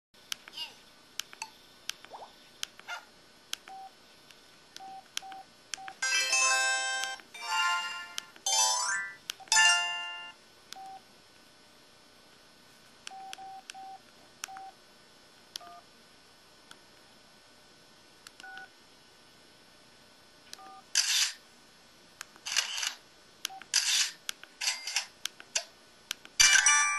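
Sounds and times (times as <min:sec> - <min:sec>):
electronic chimes: 0:06.0 - 0:10.3.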